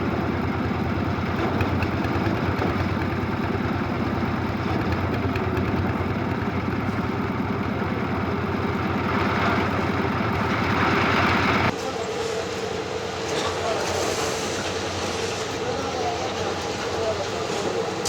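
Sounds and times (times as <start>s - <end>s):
concrete mixer engine running: 0.0s - 18.0s
engine-like background: 0.0s - 18.0s
hiss: 13.3s - 15.8s.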